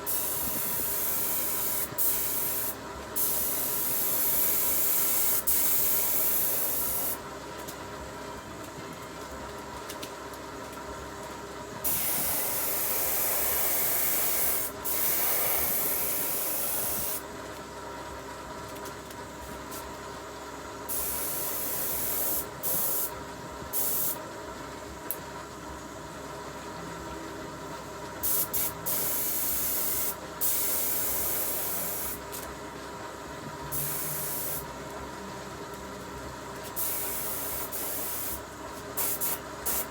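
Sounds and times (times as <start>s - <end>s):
steady hum: 11.6s - 17.4s.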